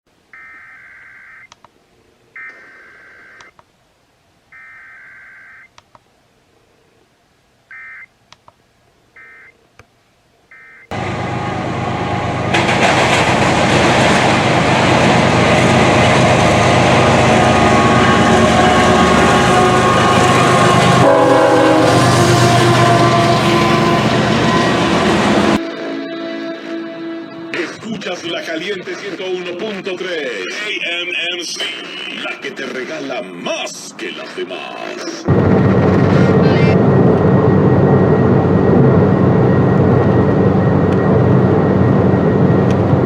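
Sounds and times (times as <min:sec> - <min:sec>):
broadcast audio with sustained tones: 0:24.7 - 0:40.9.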